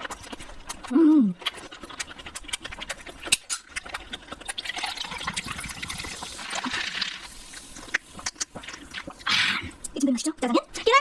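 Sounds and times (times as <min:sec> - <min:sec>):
chewing mouth clicks: 0:00.0 - 0:05.0, 0:07.5 - 0:10.1
noodle slurp: 0:00.0 - 0:11.0.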